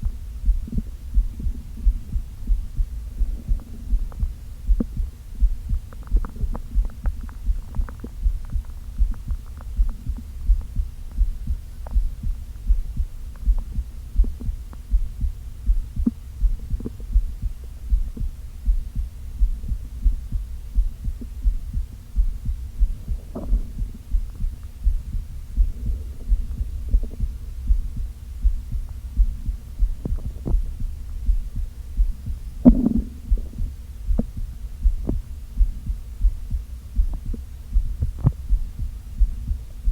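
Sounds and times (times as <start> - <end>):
stomach gurgling: 0.5 - 12.8, 22.8 - 27.8, 32.2 - 35.8
faint clicks: 3.2 - 15.1.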